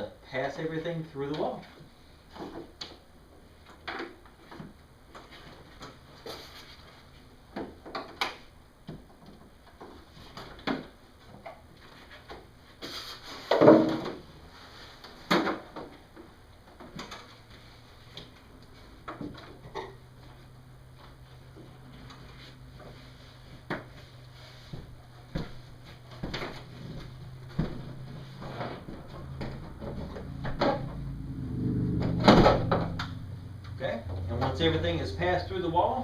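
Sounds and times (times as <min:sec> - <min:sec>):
knocks and bumps: 0:24.7 - 0:31.1, 0:31.9 - 0:33.2.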